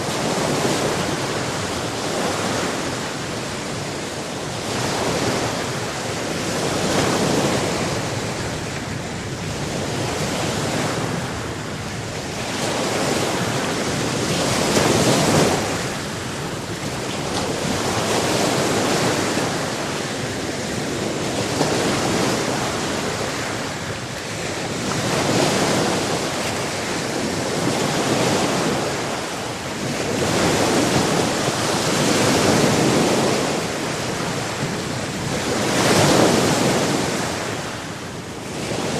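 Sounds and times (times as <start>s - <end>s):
waves breaking on shore: 0.0s - 38.9s
wind on microphone: 0.0s - 38.9s.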